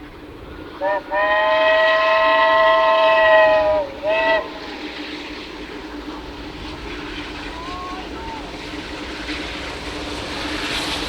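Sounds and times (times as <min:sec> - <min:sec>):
steam locomotive whistle: 0:00.8 - 0:05.0.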